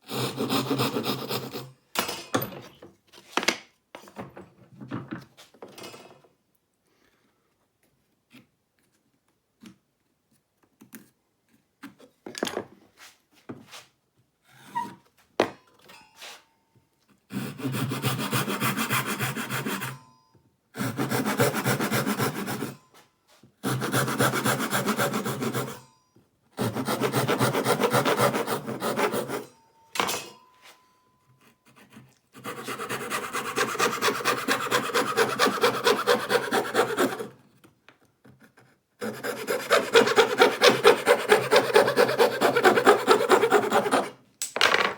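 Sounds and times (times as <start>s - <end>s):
hand saw cutting wood: 0.0s - 1.7s, 17.3s - 20.0s, 20.8s - 22.8s, 23.6s - 25.9s, 26.6s - 29.5s, 31.6s - 37.4s, 38.4s - 44.2s.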